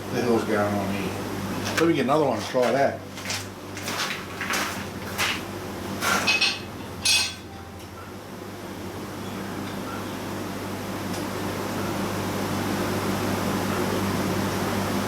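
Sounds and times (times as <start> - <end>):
steady low hum: 4.8 - 15.0.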